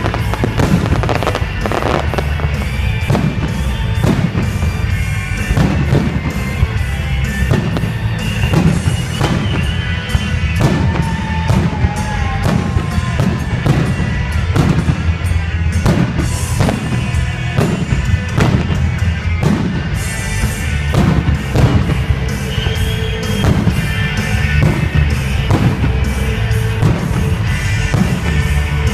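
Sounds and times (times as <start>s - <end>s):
fireworks bangs and crackles: 0.0s - 28.9s
loud music with steady beat: 0.0s - 28.9s.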